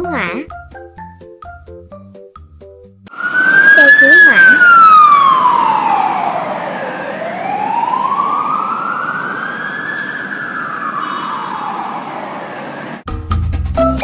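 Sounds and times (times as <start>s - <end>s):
fire truck siren wailing: 3.1s - 13.0s.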